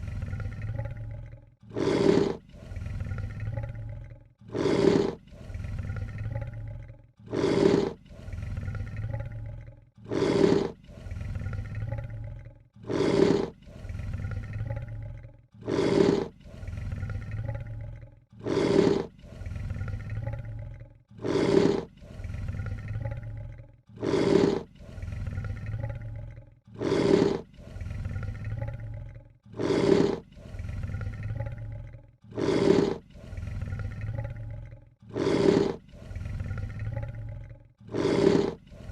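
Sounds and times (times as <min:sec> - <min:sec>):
lion hissing: 0:01.7 - 0:03.6, 0:04.5 - 0:06.5, 0:07.2 - 0:09.2, 0:10.0 - 0:12.0, 0:12.8 - 0:14.8, 0:15.6 - 0:17.6, 0:18.4 - 0:20.3, 0:21.2 - 0:23.2, 0:24.0 - 0:26.1, 0:26.7 - 0:28.9, 0:29.5 - 0:31.7, 0:32.3 - 0:34.5, 0:35.1 - 0:38.9.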